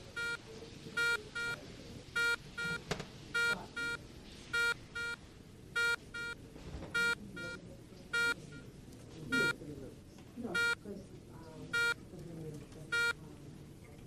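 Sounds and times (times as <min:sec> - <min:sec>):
low room murmur: 0:00.0 - 0:14.0
electronic alarm beeping: 0:00.2 - 0:00.4, 0:02.2 - 0:02.8, 0:03.4 - 0:04.0, 0:04.6 - 0:05.2, 0:05.8 - 0:06.4, 0:07.0 - 0:08.6, 0:09.3 - 0:09.5, 0:10.6 - 0:10.8, 0:11.8 - 0:12.0, 0:13.0 - 0:13.2.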